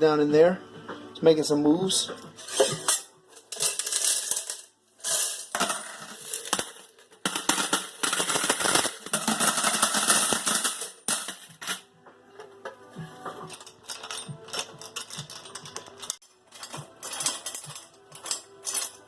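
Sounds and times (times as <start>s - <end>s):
coins clinking and rattling: 2.4s - 11.9s, 13.4s - 19.0s.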